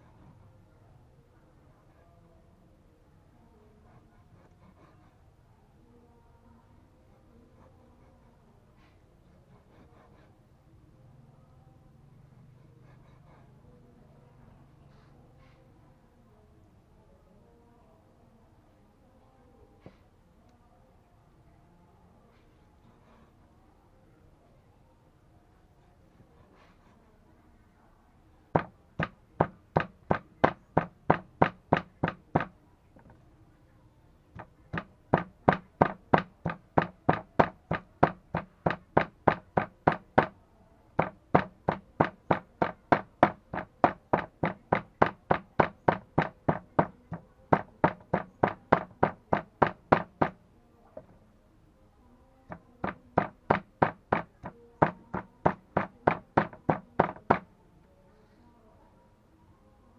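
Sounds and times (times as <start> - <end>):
knife chopping on wooden board: 28.6 - 32.5, 34.8 - 40.3, 47.6 - 50.4.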